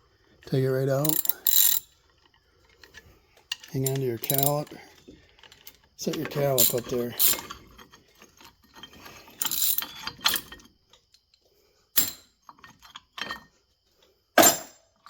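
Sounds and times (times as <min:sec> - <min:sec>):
metallic clicks of brake parts: 0:01.0 - 0:11.4.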